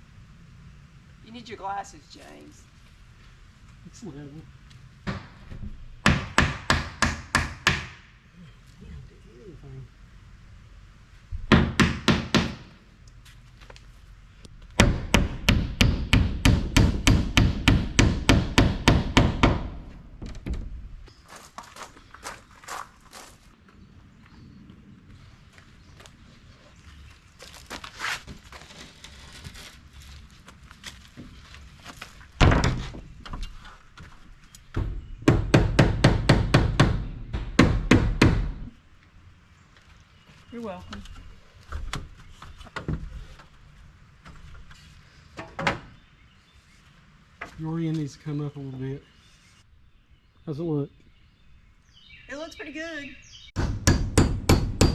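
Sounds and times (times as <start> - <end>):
hammer striking wooden siding: 5.0 - 8.2, 11.4 - 12.8, 14.8 - 20.7, 32.4 - 33.4, 34.7 - 38.8, 53.6 - 54.9.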